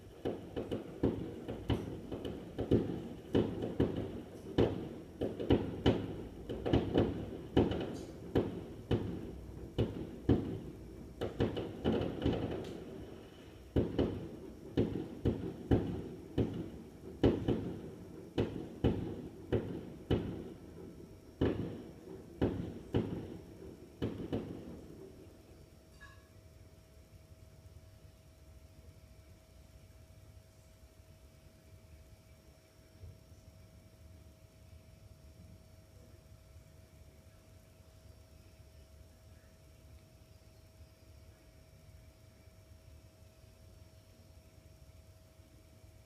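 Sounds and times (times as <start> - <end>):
fireworks bangs with echo: 0.0 - 25.6.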